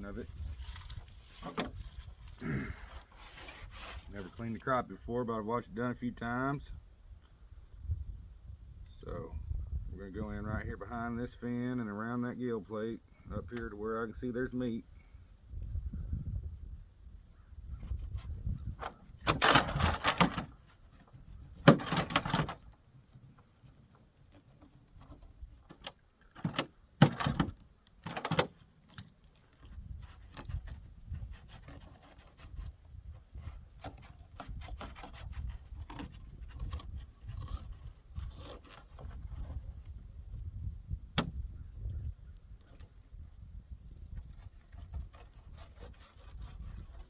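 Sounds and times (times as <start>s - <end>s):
knife scraping fish: 29.5s - 39.5s, 44.8s - 47.0s.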